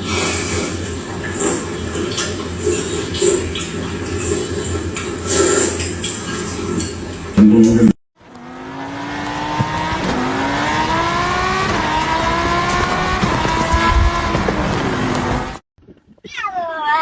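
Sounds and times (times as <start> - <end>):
motor drone rising in pitch: 7.4 - 15.6.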